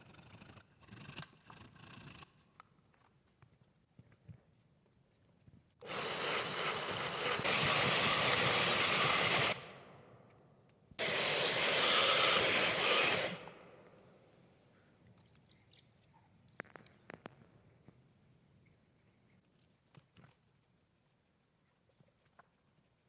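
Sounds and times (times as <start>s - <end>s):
knife grinding on power grinder: 5.8s - 9.7s, 11.0s - 13.6s.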